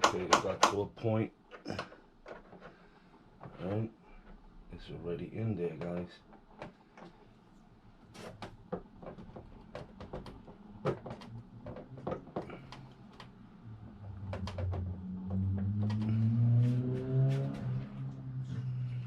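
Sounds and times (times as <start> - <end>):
low hum: 12.5 - 19.0.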